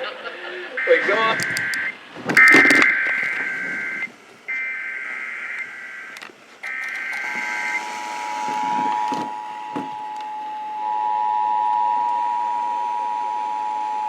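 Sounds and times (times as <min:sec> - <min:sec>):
steady attention tone: 0:00.8 - 0:10.6
sharp clicks: 0:01.2 - 0:04.1, 0:05.6 - 0:09.4.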